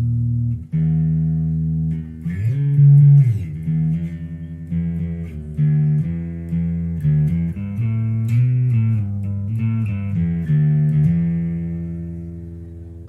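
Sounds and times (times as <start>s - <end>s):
electric bass guitar: 0.0s - 13.0s.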